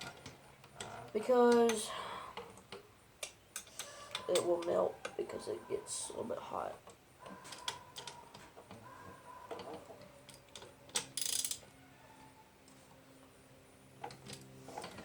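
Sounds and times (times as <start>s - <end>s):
hand tools clicking and tapping: 2.4s - 5.2s, 6.8s - 11.6s.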